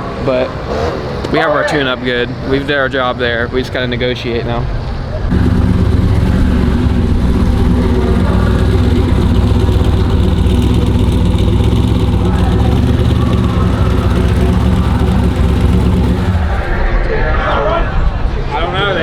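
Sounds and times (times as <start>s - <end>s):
car engine idling: 5.3s - 16.9s.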